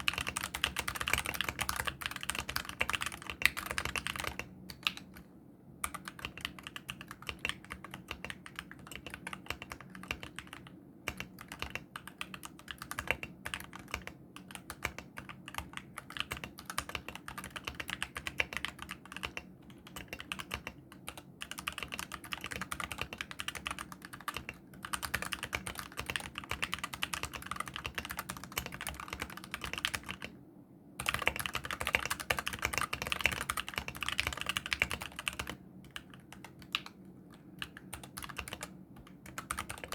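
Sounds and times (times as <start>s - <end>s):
fast mechanical keyboard typing: 0.0s - 5.2s, 5.8s - 30.4s, 31.0s - 37.0s, 37.6s - 39.9s.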